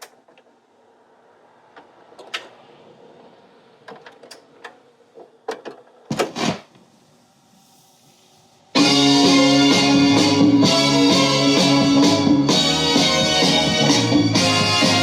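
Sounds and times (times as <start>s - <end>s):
faint steady hiss: 6.6s - 9.4s.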